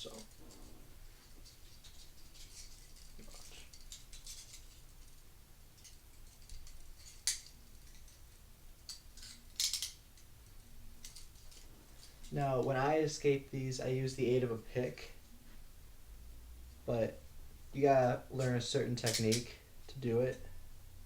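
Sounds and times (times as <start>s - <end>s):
handcuffs clicking and rattling: 0.0s - 5.2s, 5.8s - 12.3s, 18.4s - 19.5s.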